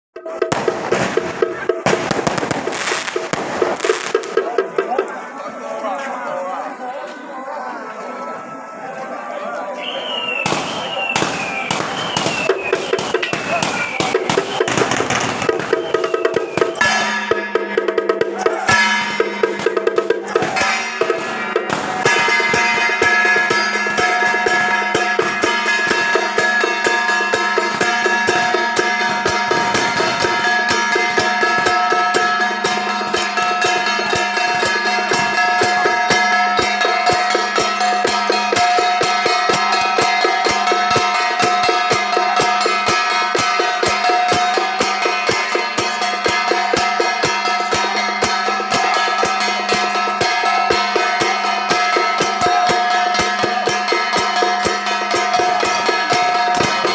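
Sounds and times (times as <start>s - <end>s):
rapid drum strokes: 0.2s - 5.1s, 10.4s - 56.9s
cymbal strokes: 10.4s - 56.9s.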